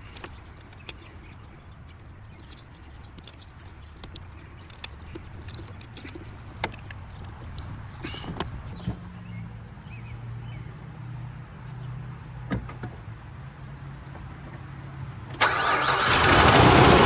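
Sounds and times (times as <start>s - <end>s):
car engine starting and running: 15.3s - 17.0s.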